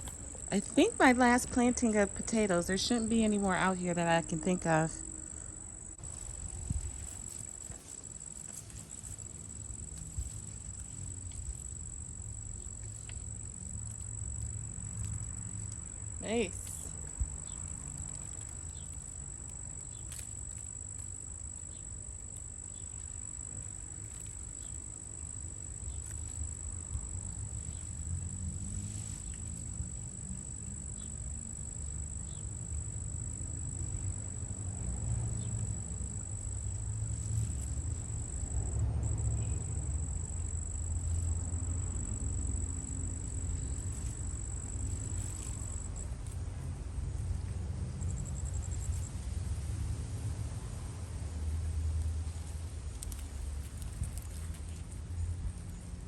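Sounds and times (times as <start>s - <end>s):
insect high-pitched trill: 2.9s - 46.4s, 47.9s - 49.2s.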